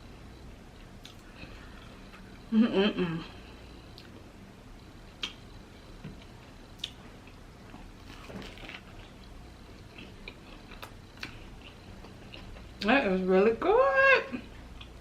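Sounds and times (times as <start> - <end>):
quiet chewing: 0.8 - 2.3, 3.8 - 4.3, 6.0 - 12.9, 14.4 - 15.0.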